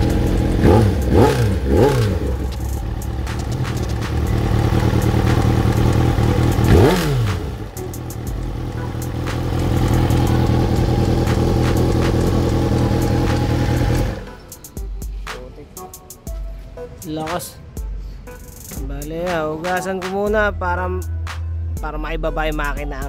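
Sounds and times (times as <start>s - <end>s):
motorcycle engine revving: 0.0s - 14.8s.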